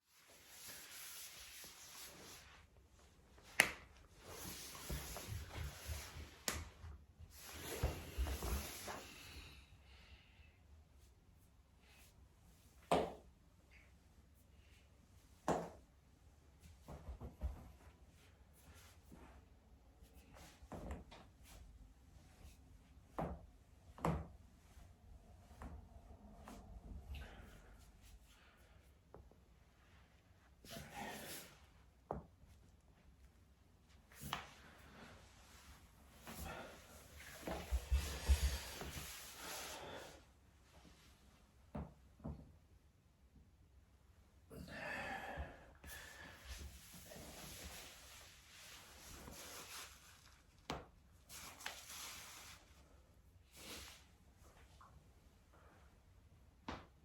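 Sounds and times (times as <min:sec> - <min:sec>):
rustling from body movement: 0:33.8 - 0:41.6, 0:46.4 - 0:55.3.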